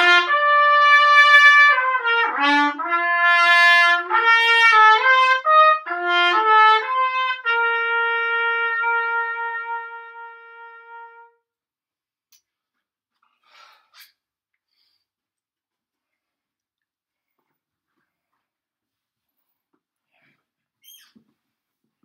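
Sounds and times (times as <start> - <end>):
solo trumpet playing: 0.0 - 11.4.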